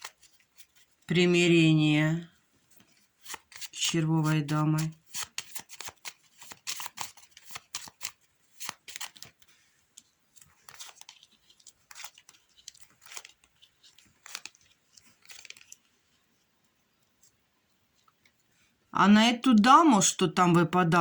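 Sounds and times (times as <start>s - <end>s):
playing cards shuffled: 2.8s - 16.0s.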